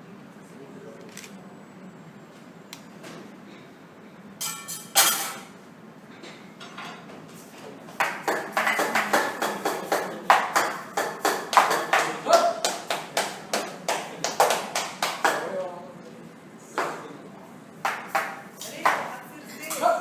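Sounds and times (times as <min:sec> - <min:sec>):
voices in a room: 0:05.4 - 0:20.0
sharp hits claps or taps: 0:08.0 - 0:15.5, 0:17.8 - 0:19.1.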